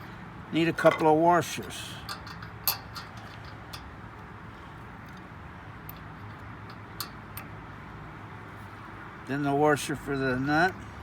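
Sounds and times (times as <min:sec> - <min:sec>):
metal washers clicking: 0:02.0 - 0:03.9.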